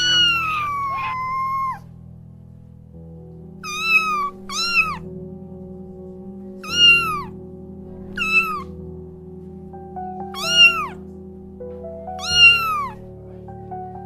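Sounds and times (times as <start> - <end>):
kitten meowing: 0.0 - 1.9, 3.6 - 5.1, 6.6 - 7.4, 8.1 - 8.8, 10.3 - 11.0, 12.2 - 13.0
soft background music: 0.0 - 14.0.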